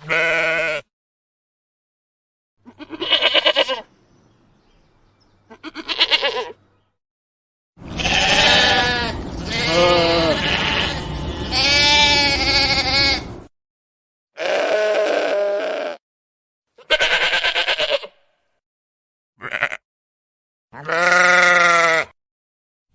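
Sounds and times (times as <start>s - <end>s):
lamb bleating: 0.0s - 0.9s, 2.6s - 3.9s, 5.5s - 6.6s, 7.8s - 13.3s, 14.4s - 16.0s, 16.8s - 18.3s, 19.4s - 19.8s, 20.7s - 22.2s.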